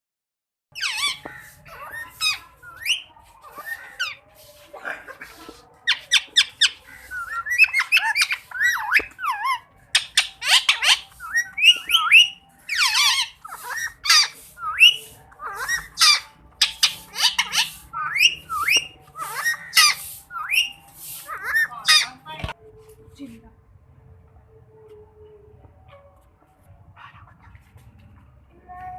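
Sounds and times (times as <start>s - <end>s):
parakeet squawking and whistling: 0.7s - 22.6s.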